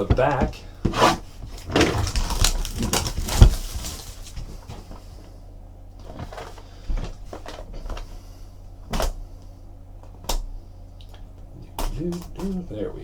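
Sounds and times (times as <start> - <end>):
crinkling wrap and cardboard: 0.0 - 5.3.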